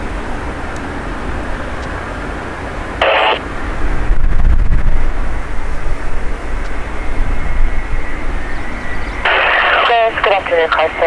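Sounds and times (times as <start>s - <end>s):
jet airliner rumble: 0.0s - 11.0s
wind noise on microphone: 0.0s - 11.0s
radio squelch: 3.0s - 3.6s, 9.2s - 11.0s.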